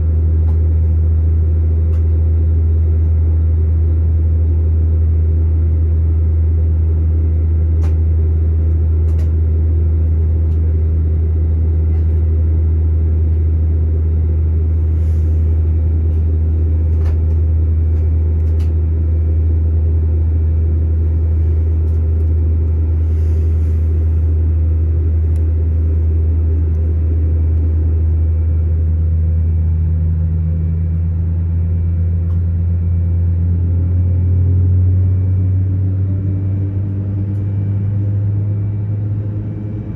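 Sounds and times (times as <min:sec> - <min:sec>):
airplane cabin engine drone: 0:00.0 - 0:39.9.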